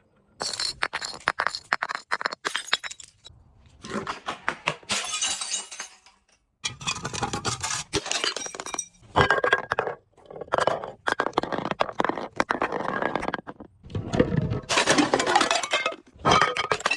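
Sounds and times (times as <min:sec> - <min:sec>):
glass breaking and crunching: 0:00.4 - 0:03.3, 0:04.9 - 0:09.8, 0:14.7 - 0:16.9.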